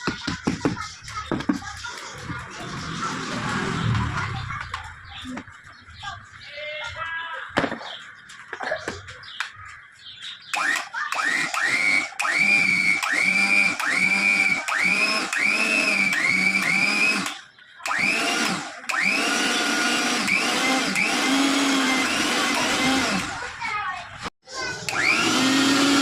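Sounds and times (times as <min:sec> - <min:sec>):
mixer grinder motor whining: 0:10.5 - 0:23.4, 0:24.8 - 0:26.0.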